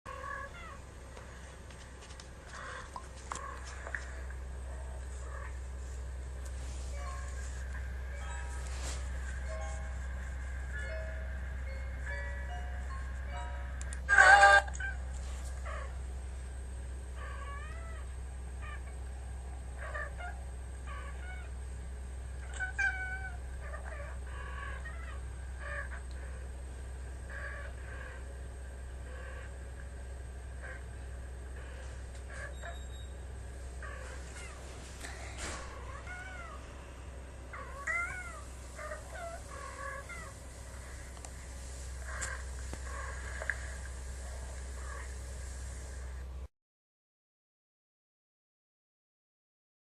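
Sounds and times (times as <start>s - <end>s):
steady low hum: 0.1s - 46.5s
cat meowing: 35.8s - 36.6s, 37.5s - 40.4s.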